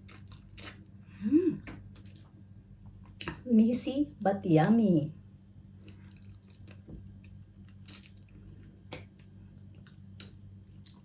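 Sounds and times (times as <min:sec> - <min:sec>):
wet chewing and lip smacks: 0:05.8 - 0:11.0.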